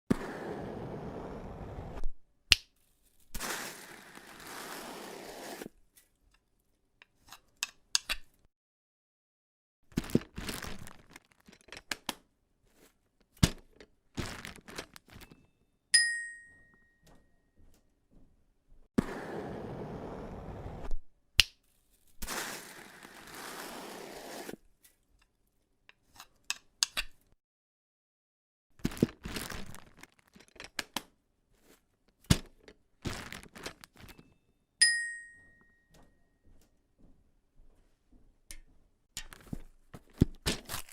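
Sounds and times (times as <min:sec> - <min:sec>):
scraping rustling noise: 0:02.8 - 0:05.7, 0:21.6 - 0:24.6
bell-like ping: 0:16.0 - 0:17.3, 0:34.8 - 0:36.3.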